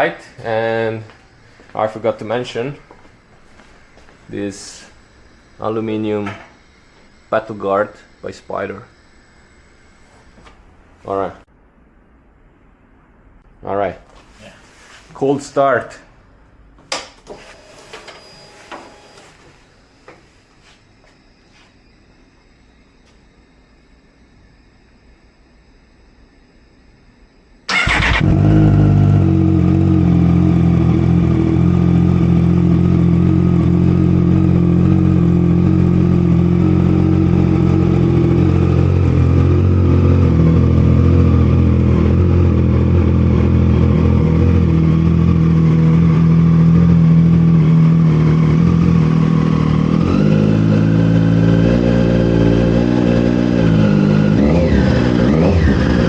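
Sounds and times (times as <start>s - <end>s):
motorcycle engine idling: 27.7s - 51.5s.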